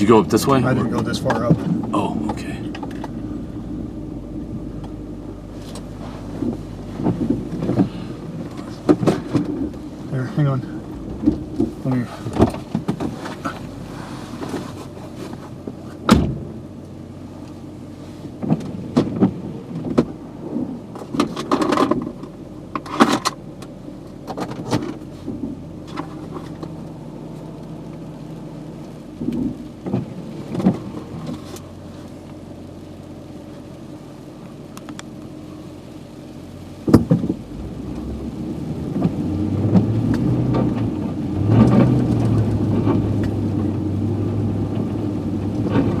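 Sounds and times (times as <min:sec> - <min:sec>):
truck engine running: 0:00.0 - 0:46.0
knocks and clunks: 0:00.8 - 0:03.2, 0:05.6 - 0:13.7, 0:16.0 - 0:16.5, 0:18.4 - 0:23.4, 0:36.9 - 0:37.4.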